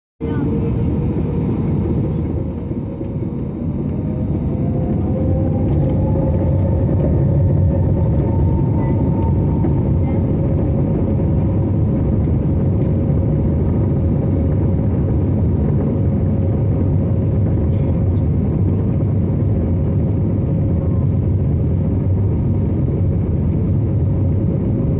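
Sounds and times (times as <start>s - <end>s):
jet engines spooling up: 0.6s - 17.4s.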